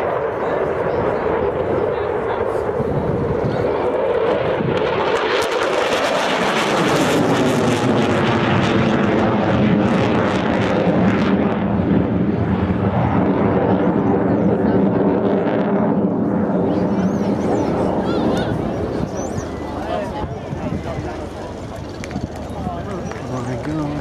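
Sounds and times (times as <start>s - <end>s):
jet passing overhead: 0.0s - 24.0s.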